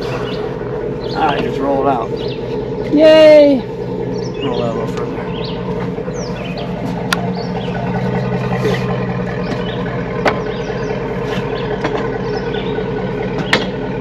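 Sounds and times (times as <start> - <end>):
engine idling: 0.0 - 14.0.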